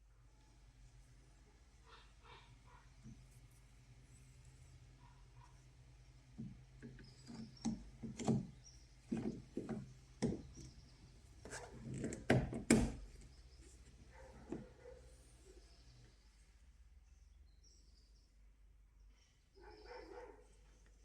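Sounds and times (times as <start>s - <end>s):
car door handle clicks and knocks: 7.6s - 10.7s, 11.9s - 13.1s.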